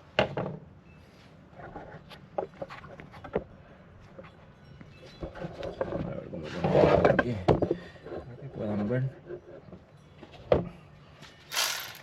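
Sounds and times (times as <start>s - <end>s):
metal and plastic parts clicking: 11.5s - 12.0s.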